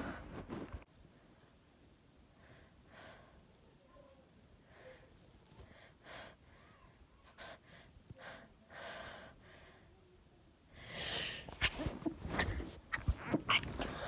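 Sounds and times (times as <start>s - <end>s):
woman gasping and sniffing: 10.8s - 14.0s.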